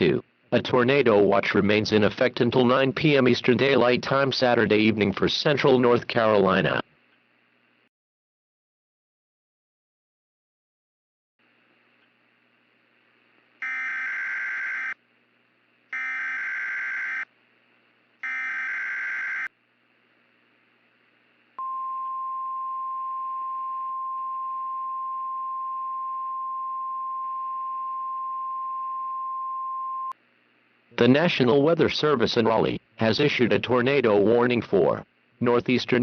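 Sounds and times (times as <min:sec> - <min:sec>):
single-pitch warning alarm tone: 0:13.6 - 0:15.0, 0:15.9 - 0:17.3, 0:18.2 - 0:19.5.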